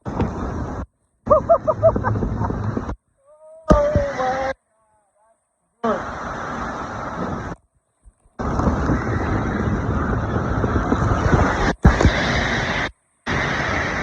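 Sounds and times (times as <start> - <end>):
wind buffeting microphone: 0.0 - 3.0, 8.2 - 14.0
loud rushing noise: 8.4 - 14.0.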